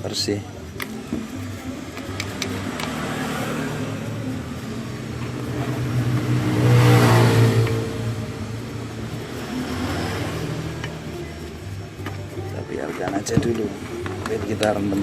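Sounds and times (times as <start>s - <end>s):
vehicle engine passing by: 0.9s - 12.5s.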